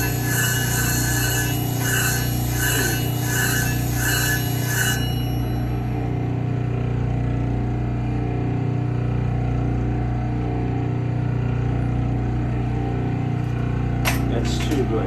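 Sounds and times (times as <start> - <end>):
sharpening machine motor humming: 0.0 - 7.0.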